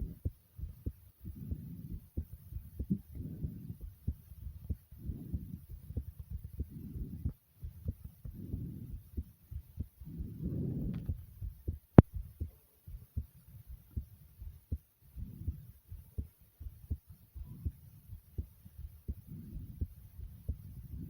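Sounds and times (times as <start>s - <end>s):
fast heartbeat thumps: 0.0s - 21.0s
heavy breaths: 8.2s - 9.3s, 10.0s - 11.2s.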